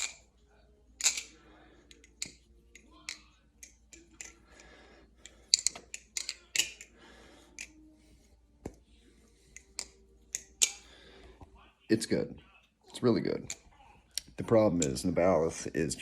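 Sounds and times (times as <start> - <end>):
butterfly knife handles clacking: 1.0 - 4.4, 5.2 - 7.8.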